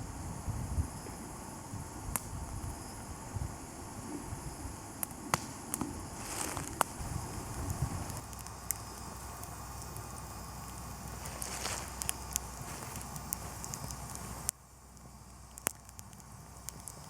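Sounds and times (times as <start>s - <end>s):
soft hiss of burning: 0.0s - 17.0s
campfire crackling and popping: 0.9s - 17.0s.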